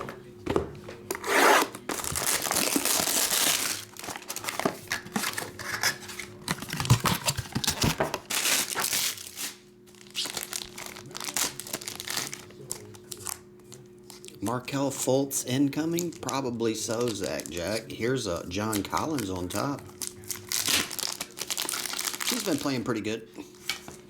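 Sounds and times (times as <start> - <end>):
plastic wrapping crinkling and tearing: 1.5 - 14.4, 15.9 - 17.9, 18.7 - 23.0.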